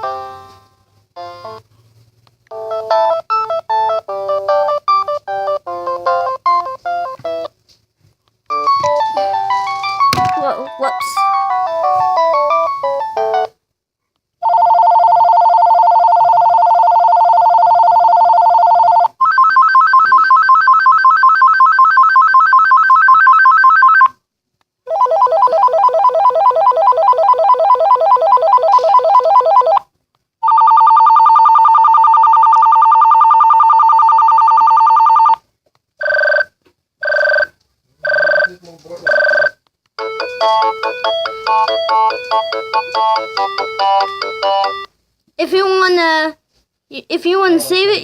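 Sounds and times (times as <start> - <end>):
phone ringer melody: 0.0 - 1.7, 2.5 - 7.5, 8.5 - 13.6, 14.4 - 24.1, 24.9 - 29.8, 30.4 - 35.4, 39.1 - 44.9.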